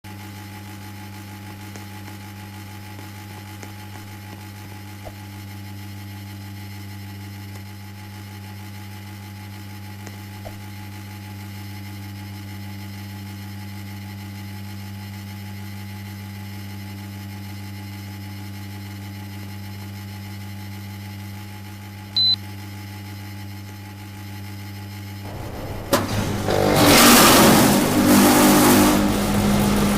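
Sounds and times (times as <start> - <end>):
electric fan motor humming: 16.9 - 29.9.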